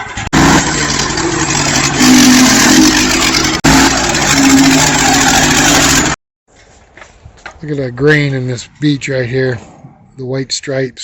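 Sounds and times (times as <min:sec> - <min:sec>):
engine running at speed: 0:00.0 - 0:06.2.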